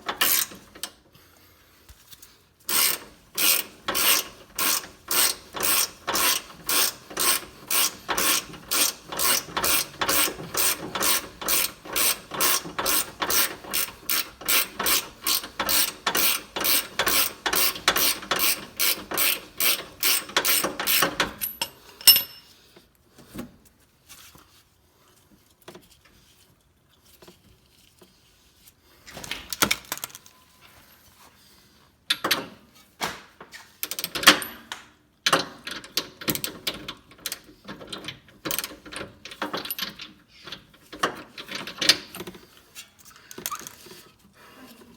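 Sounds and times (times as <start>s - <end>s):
ratchet wrench clicking: 0.2s - 0.6s, 2.7s - 21.6s.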